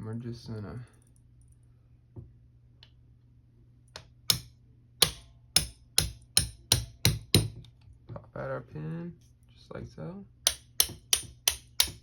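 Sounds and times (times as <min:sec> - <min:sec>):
hammer tapping metal punch: 0:04.0 - 0:07.7, 0:10.5 - 0:12.0.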